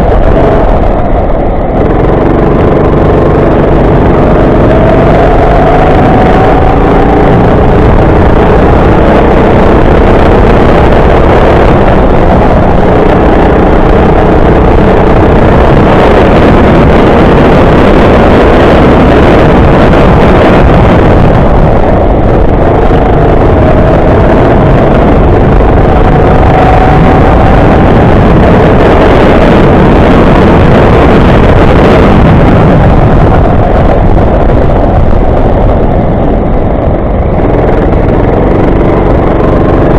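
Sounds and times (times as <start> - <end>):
go-kart engine revving: 0.0 - 39.9.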